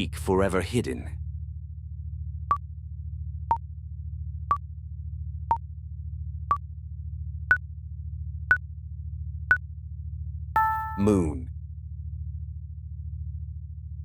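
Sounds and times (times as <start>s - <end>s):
short electronic beeps: 10.6s - 11.4s.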